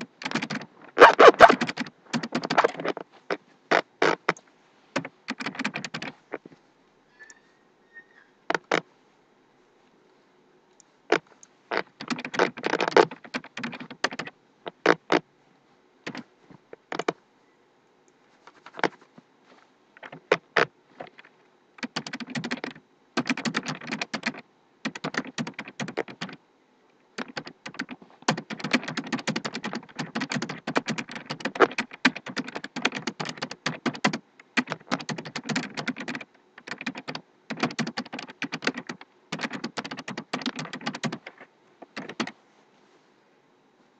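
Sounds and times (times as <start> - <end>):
typing on computer keyboard: 0.0 - 3.0, 5.0 - 6.2, 11.1 - 14.3, 16.0 - 16.2, 16.8 - 17.2, 18.4 - 19.0, 20.0 - 26.4, 27.2 - 42.4.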